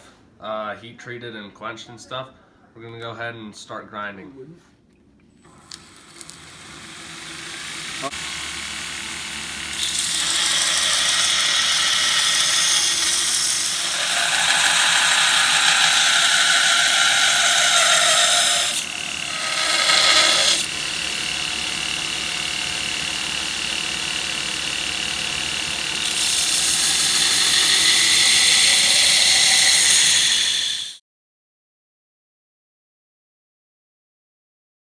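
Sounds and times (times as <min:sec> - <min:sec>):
grinder on steel blade: 0:05.5 - 0:31.0.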